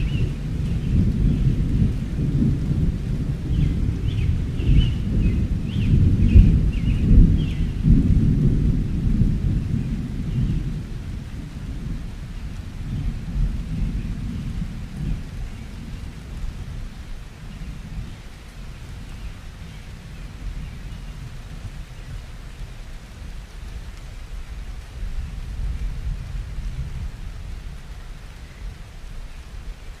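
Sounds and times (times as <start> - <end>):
rolling thunder: 0.0 - 22.1.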